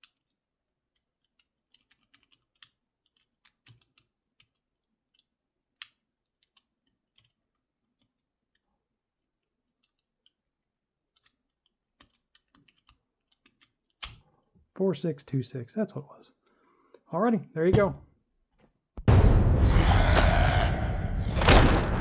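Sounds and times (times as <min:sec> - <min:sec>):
combination lock dials clicking: 0:00.0 - 0:08.7, 0:11.1 - 0:14.3.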